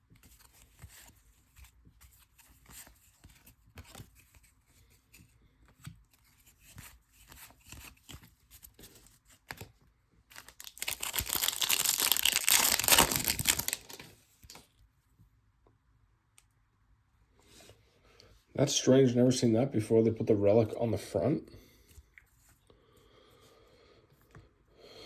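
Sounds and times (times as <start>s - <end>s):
rustling of cards and wrappers: 0.0s - 14.8s
wrapper tearing with crinkling: 10.3s - 14.7s.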